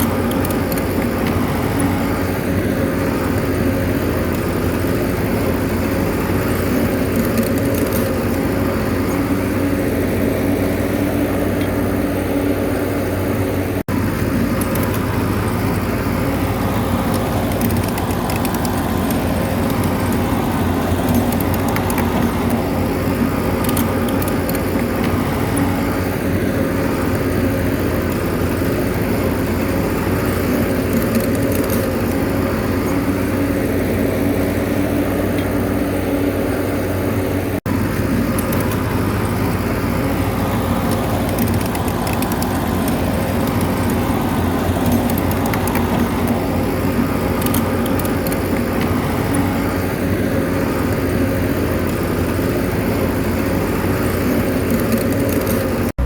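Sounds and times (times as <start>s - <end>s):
bulldozer diesel engine running: 0.0s - 56.0s.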